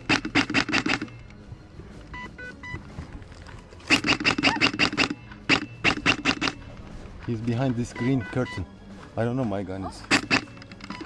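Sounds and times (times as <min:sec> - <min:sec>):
airsoft gun firing bursts: 0:00.0 - 0:01.2, 0:03.9 - 0:06.6, 0:10.1 - 0:11.0
faint electronic beeps: 0:00.0 - 0:11.0.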